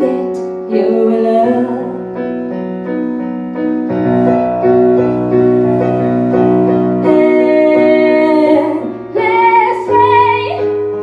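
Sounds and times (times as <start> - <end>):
person singing slow ballad: 0.0 - 2.2, 7.0 - 10.7
piano chords: 0.0 - 11.0.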